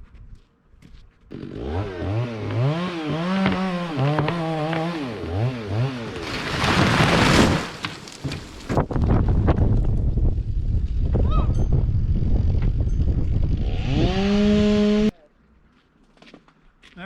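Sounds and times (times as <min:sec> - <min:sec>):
chainsaw revving: 0:01.3 - 0:07.8, 0:13.4 - 0:15.1.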